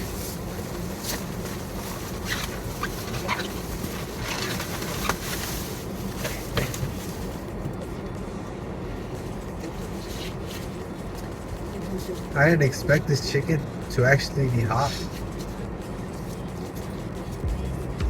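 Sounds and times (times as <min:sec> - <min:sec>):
car cabin hum: 0:10.6 - 0:18.0.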